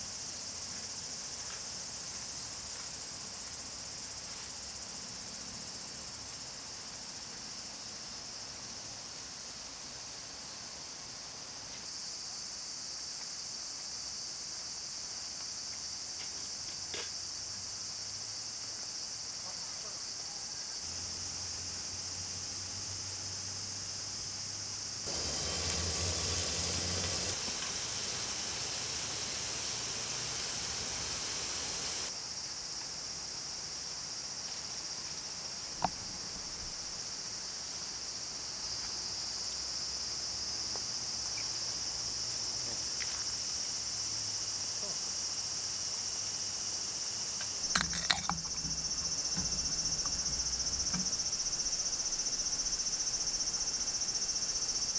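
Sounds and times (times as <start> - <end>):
high-pitched insect chorus: 18.4 - 32.5, 44.4 - 54.9
loud hiss: 25.0 - 32.1, 47.5 - 54.9.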